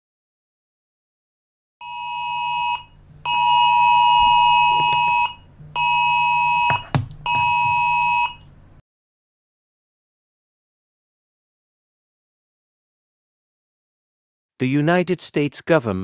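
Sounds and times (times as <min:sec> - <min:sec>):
electronic alarm beeps: 0:01.8 - 0:08.4
low hum: 0:02.2 - 0:08.8.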